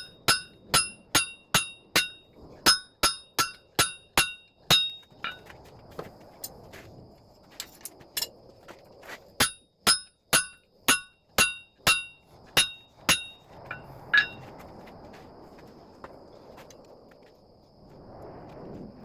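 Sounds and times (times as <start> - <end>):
hammer striking steel on anvil: 0.0 - 5.4, 9.4 - 14.4.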